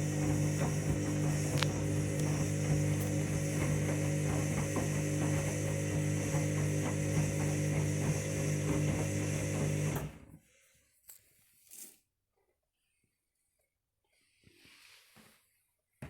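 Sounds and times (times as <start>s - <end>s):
washing machine motor humming: 0.0s - 10.3s.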